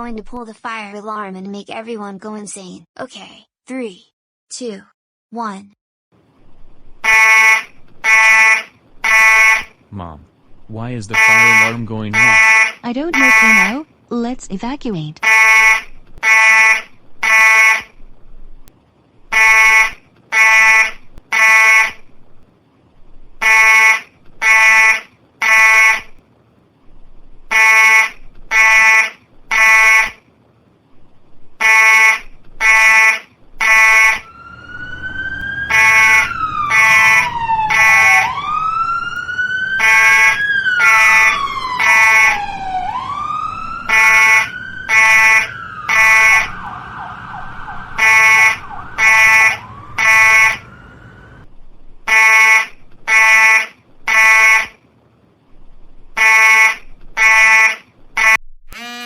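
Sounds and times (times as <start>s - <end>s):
fire alarm beeping: 7.0s - 9.7s, 11.2s - 13.8s, 15.2s - 17.9s, 31.7s - 51.4s
emergency vehicle siren wailing: 11.1s - 13.8s, 33.6s - 51.5s.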